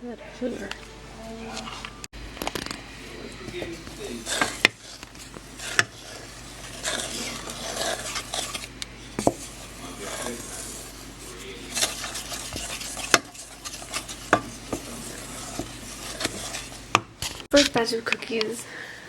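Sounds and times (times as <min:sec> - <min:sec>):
spoon scraping a container: 0:03.5 - 0:17.8.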